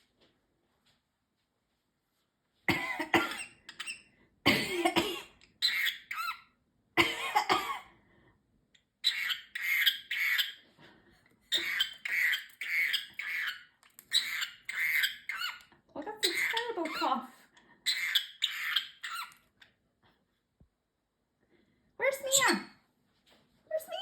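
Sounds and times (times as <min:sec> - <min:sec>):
parrot mimicking coughs: 0:02.7 - 0:06.3, 0:07.0 - 0:07.9.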